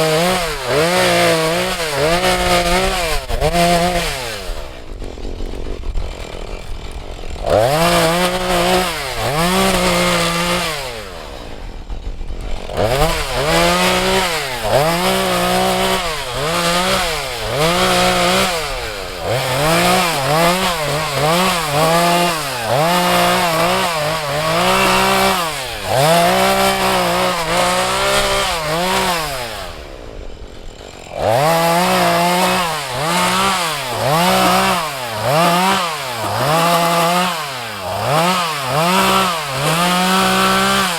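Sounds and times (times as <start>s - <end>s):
chainsaw running: 0.0s - 40.9s.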